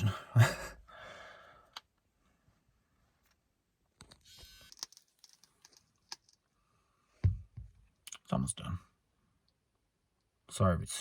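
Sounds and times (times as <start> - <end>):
small objects clicking: 4.0 - 6.5.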